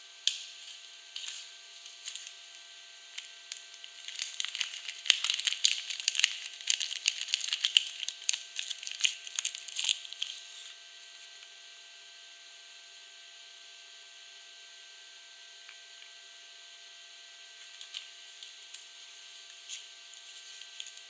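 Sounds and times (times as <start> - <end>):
packaging tearing and crinkling: 3.2 - 10.8, 19.4 - 21.0.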